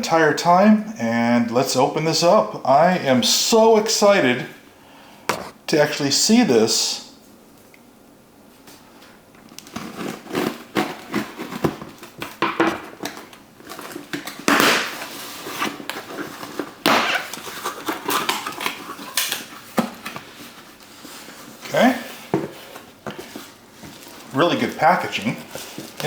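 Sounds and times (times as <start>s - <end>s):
cardboard box rustling and crinkling: 13.0s - 26.0s.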